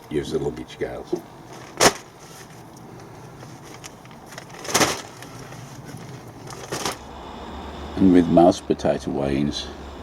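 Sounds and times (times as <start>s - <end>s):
plastic bag crinkling: 1.5s - 7.1s.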